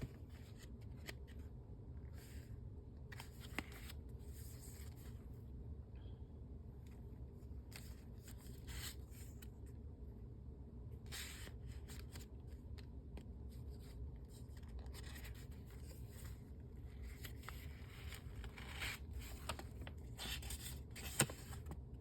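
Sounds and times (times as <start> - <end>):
paper pages rustling: 0.0 - 2.4, 3.0 - 5.2, 7.5 - 9.6, 11.1 - 21.9.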